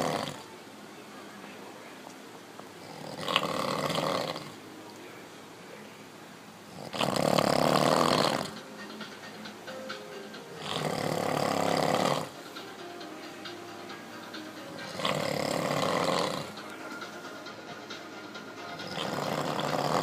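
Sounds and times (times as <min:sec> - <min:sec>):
man snoring loudly: 0:00.0 - 0:00.4, 0:02.8 - 0:04.6, 0:06.7 - 0:08.6, 0:10.6 - 0:12.4, 0:14.9 - 0:16.6, 0:18.8 - 0:20.0.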